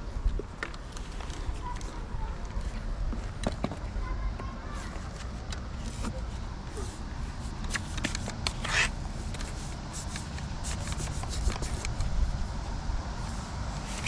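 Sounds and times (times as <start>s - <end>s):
trowel scraping mortar on brick: 7.6s - 11.8s
steady low rumble: 9.0s - 14.0s.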